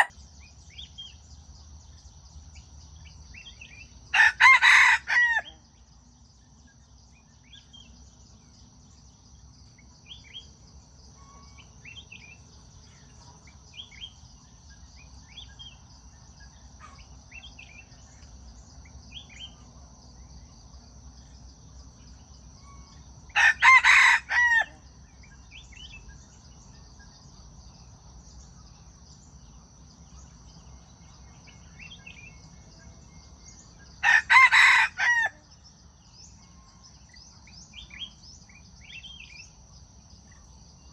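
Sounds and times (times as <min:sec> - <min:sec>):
faint bird chirps: 0:00.0 - 0:04.3, 0:05.4 - 0:23.4
rooster crowing: 0:04.1 - 0:05.6, 0:23.3 - 0:24.8, 0:34.0 - 0:35.4.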